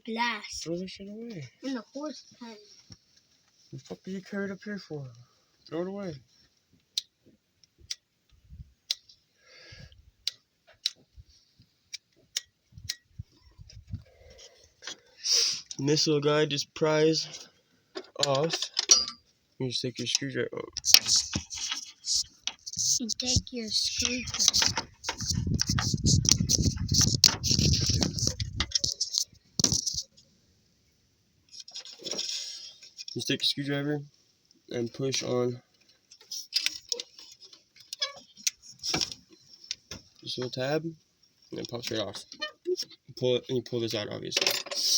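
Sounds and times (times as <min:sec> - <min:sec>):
screwdriver rattling on plastic connector: 0:20.8 - 0:30.0
brief rustle: 0:20.8 - 0:30.1.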